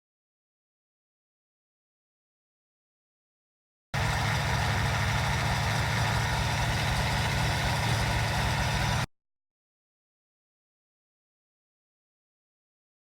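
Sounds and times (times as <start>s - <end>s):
engine idling: 4.0s - 9.1s.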